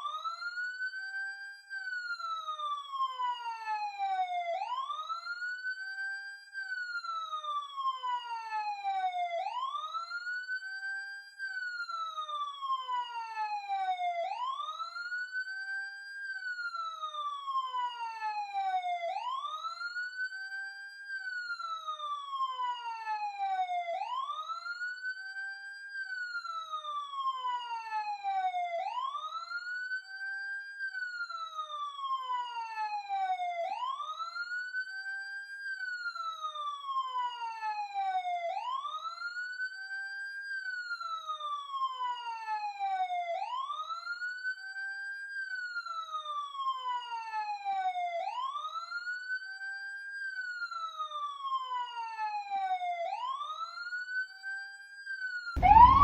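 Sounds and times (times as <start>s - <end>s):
police siren wailing: 2.1s - 5.5s, 7.0s - 10.4s, 11.8s - 15.4s, 16.6s - 20.1s, 21.5s - 24.9s, 26.2s - 29.8s, 31.2s - 34.9s, 35.9s - 39.7s, 40.6s - 44.6s, 45.5s - 49.4s, 50.2s - 54.4s, 55.0s - 56.0s.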